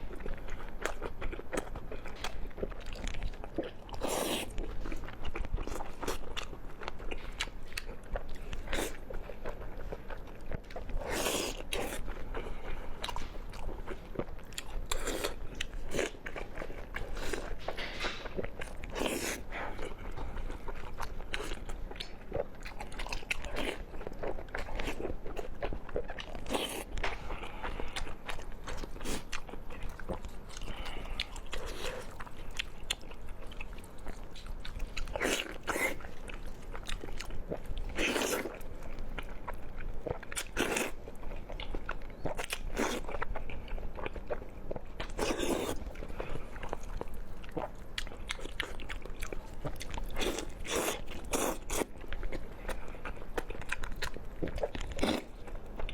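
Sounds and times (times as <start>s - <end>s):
person chewing crunchy food: 0.0s - 55.9s.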